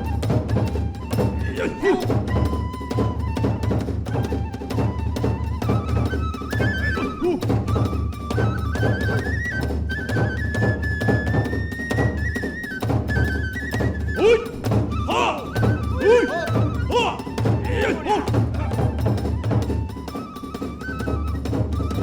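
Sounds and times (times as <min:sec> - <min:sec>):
large drum beat: 0:00.0 - 0:09.6, 0:12.9 - 0:20.2
bamboo flute melody: 0:00.0 - 0:22.0.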